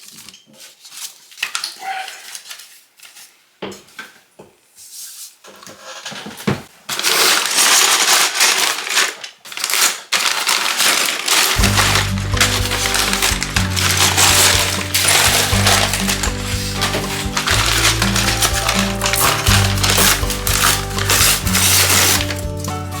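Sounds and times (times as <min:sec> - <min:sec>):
plastic crinkling and clattering: 0:00.0 - 0:04.3, 0:05.4 - 0:23.0
background music with low notes: 0:11.6 - 0:23.0.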